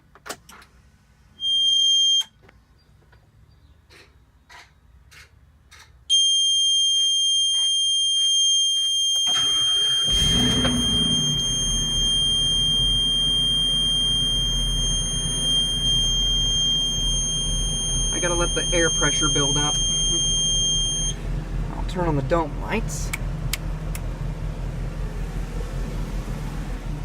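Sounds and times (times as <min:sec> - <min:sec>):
high-pitched warning buzzer: 0:06.1 - 0:21.2
bus engine cranking and idling: 0:09.2 - 0:27.0.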